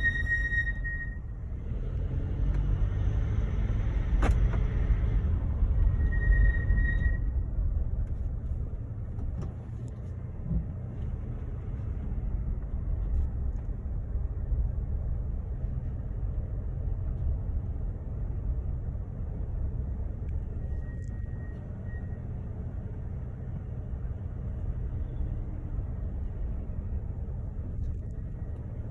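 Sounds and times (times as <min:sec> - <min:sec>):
high-pitched brake squeal: 0:00.0 - 0:01.7, 0:05.7 - 0:07.4, 0:20.5 - 0:22.6
car driving low rumble: 0:00.0 - 0:28.9.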